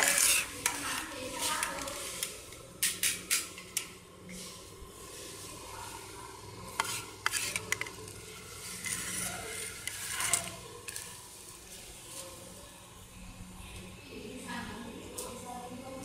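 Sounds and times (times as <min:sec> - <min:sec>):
packaging rustling and scraping: 0:00.0 - 0:02.4, 0:06.8 - 0:12.4.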